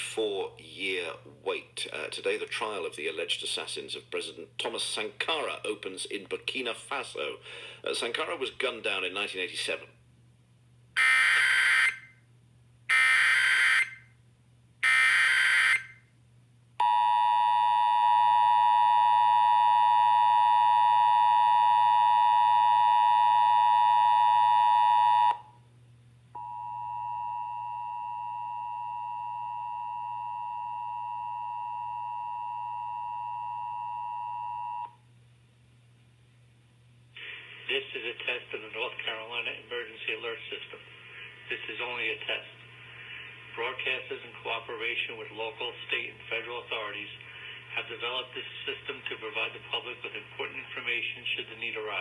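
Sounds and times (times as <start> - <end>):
quieter steady tone: 26.3 - 35.1
two-tone attention signal: 26.4 - 34.9.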